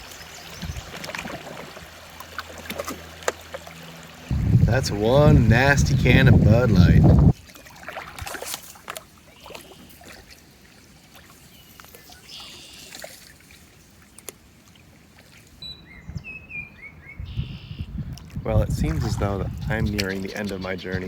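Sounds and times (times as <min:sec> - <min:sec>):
paddle splashes and drips: 0:00.0 - 0:04.6, 0:07.2 - 0:15.6, 0:18.1 - 0:21.0.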